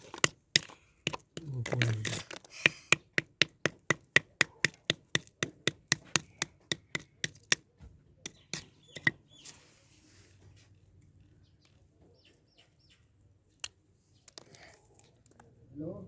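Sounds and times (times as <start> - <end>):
voice: 1.4 - 2.2, 15.8 - 16.0.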